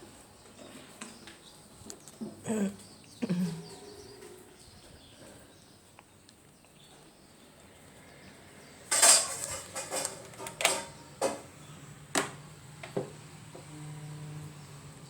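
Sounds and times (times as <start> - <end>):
small tools clicking and clinking: 8.9 - 11.4.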